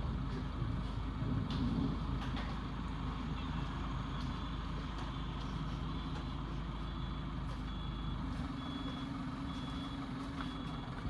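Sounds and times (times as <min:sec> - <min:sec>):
vehicle engine rumbling: 0:00.0 - 0:11.0
reversing alarm beeps: 0:03.4 - 0:11.0.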